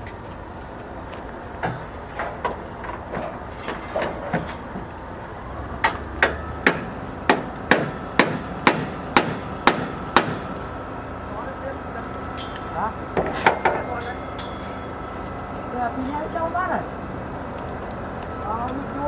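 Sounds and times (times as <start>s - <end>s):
hammer blows: 5.8s - 10.8s, 12.4s - 15.2s.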